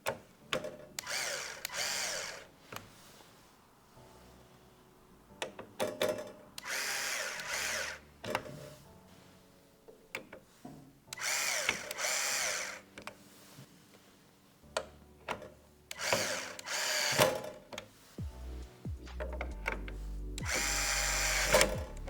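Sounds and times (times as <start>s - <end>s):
electric screwdriver motor whine: 1.0s - 2.5s, 6.6s - 8.0s, 11.1s - 12.9s, 15.9s - 17.5s, 20.4s - 22.0s.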